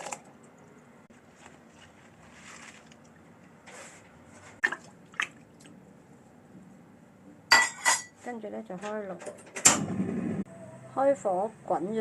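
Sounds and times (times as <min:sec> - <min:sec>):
kitchenware rustling: 0:07.5 - 0:09.6.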